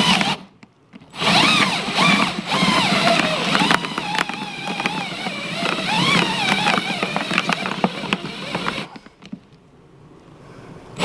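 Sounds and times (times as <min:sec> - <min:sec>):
drill whining through plastic: 0:00.0 - 0:09.4
drill bit clicking and rattling: 0:00.0 - 0:09.5.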